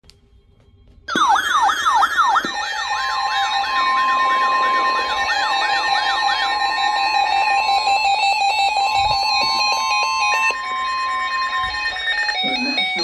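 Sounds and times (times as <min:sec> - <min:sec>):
electronic sweeping siren: 0:01.1 - 0:13.0
steady alert tones: 0:01.1 - 0:13.0.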